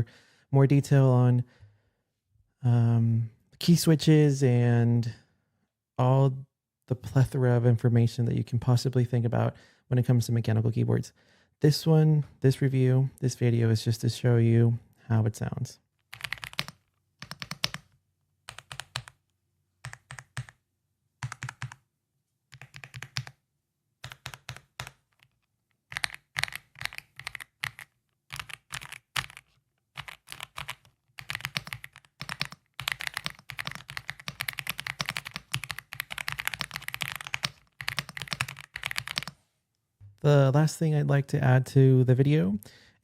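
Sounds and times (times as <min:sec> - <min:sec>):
typing on mechanical keyboard: 0:16.1 - 0:17.9, 0:18.5 - 0:19.2, 0:19.8 - 0:20.6, 0:21.2 - 0:21.8, 0:22.5 - 0:23.4, 0:24.0 - 0:39.4.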